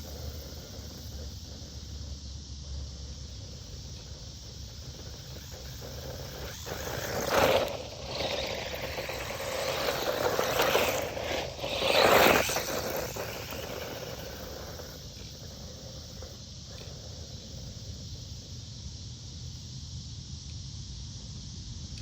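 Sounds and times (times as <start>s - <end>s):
electric toy car driving on dirt: 0.0s - 18.8s.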